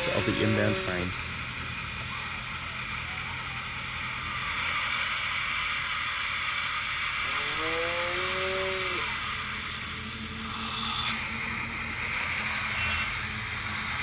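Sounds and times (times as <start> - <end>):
cow mooing: 0.0 - 1.3, 7.4 - 9.2
background hiss and hum: 0.0 - 14.0.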